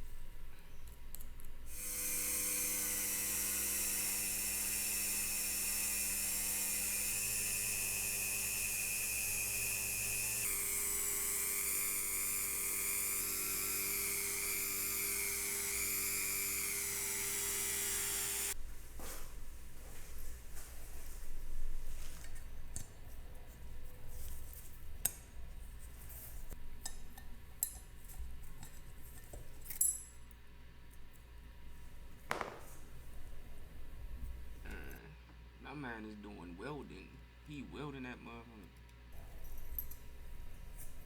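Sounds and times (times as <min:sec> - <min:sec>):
power tool motor whine: 0:01.7 - 0:18.6.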